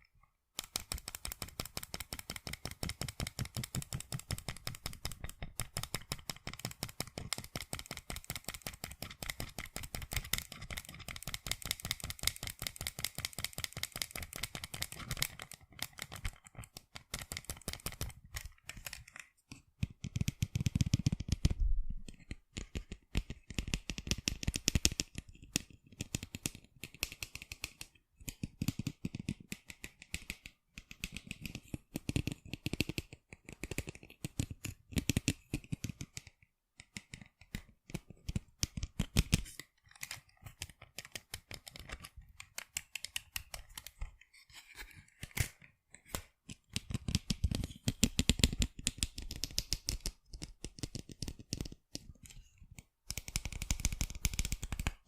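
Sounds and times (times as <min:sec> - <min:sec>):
fingers tapping on sunglasses: 0:53.1 - 0:55.0.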